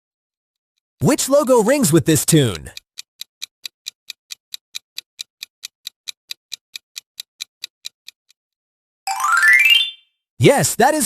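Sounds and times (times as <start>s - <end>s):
clock ticking: 1.0s - 8.5s.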